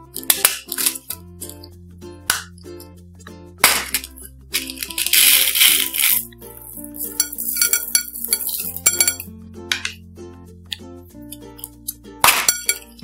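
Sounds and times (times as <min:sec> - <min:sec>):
light background music: 0:00.0 - 0:13.0
beads and glitter pouring into slime: 0:04.7 - 0:08.7.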